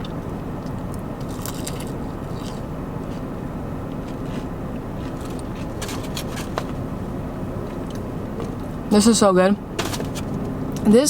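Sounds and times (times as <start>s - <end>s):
crunchy chewing of fried chicken: 0.0s - 7.0s
car engine idling: 4.8s - 11.0s.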